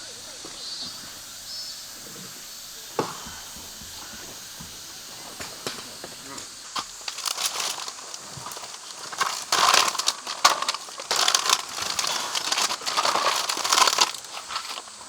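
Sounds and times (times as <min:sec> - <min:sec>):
dry crunching and crackling: 0:05.3 - 0:15.0.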